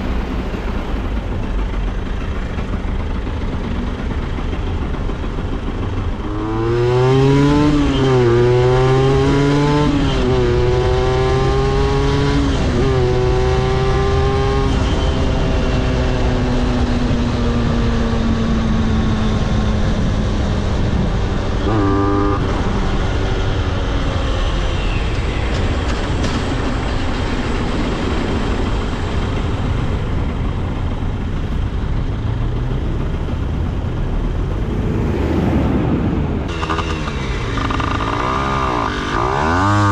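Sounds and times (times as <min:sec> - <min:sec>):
two-stroke engine accelerating: 0:00.0 - 0:39.9
steady rushing noise: 0:25.8 - 0:39.8.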